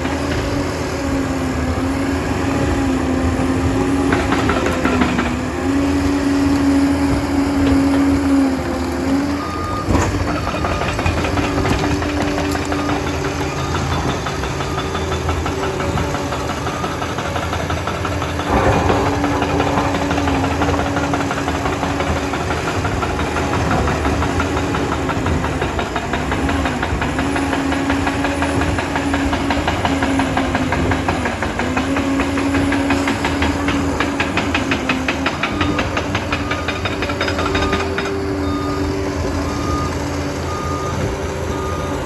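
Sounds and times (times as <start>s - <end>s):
bulldozer diesel engine running: 0.0s - 42.0s
sudden loud noise: 18.5s - 21.5s.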